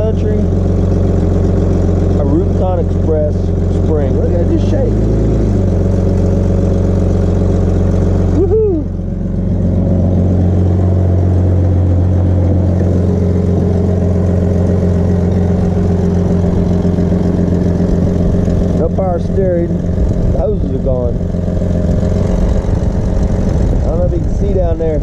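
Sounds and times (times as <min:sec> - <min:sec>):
vehicle engine idling: 0:00.0 - 0:25.0
rising and falling tone: 0:07.6 - 0:18.2.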